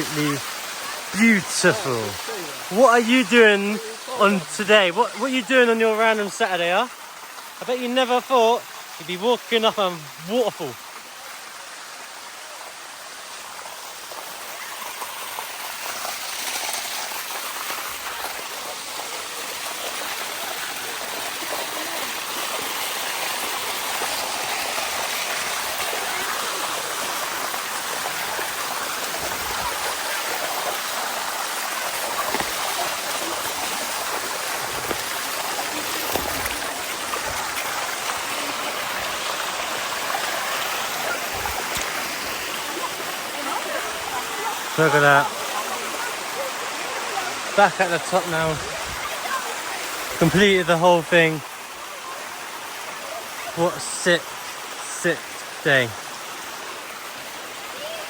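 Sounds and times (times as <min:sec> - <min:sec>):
waterfall rushing over rock: 0:00.0 - 0:58.0.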